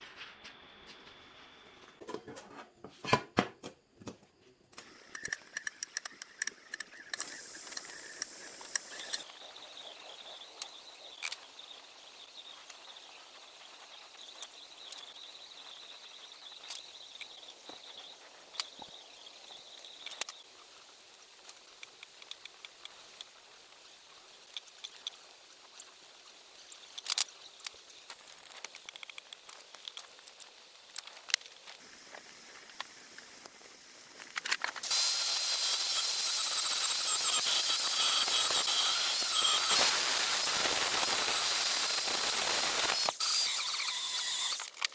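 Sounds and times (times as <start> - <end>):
gas torch flame hissing: 4.8 - 12.2, 27.9 - 44.7
crackles and clicks: 4.8 - 44.9.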